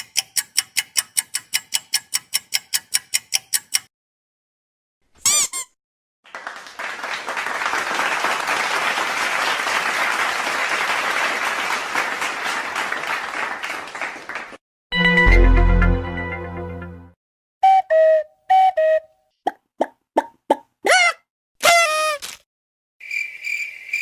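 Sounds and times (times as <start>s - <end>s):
crowd applauding: 6.3s - 14.6s.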